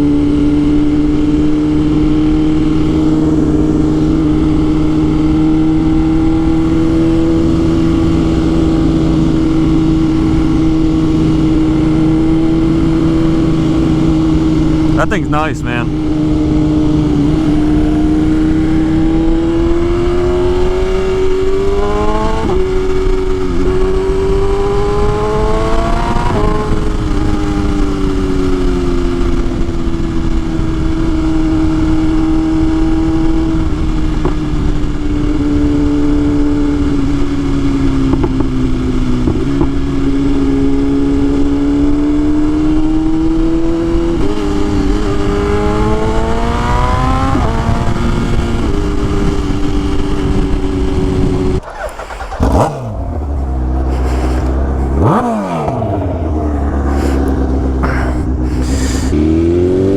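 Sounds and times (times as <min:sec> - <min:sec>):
motorcycle engine running: 0:15.8 - 0:59.9.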